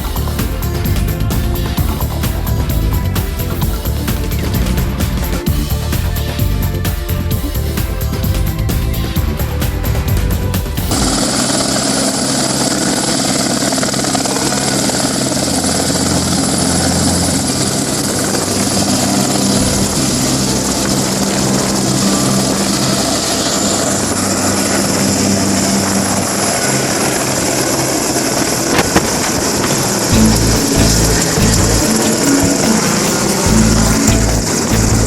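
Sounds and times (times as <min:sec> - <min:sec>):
helicopter rotor and engine: 0:00.0 - 0:35.0
high steady whine: 0:00.0 - 0:35.0.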